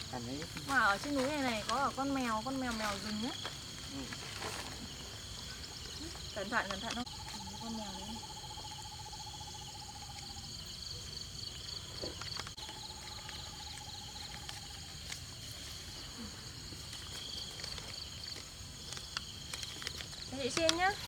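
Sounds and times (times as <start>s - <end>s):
low pulsing insect trill: 0.0s - 21.0s
high-pitched insect trilling: 4.9s - 21.0s.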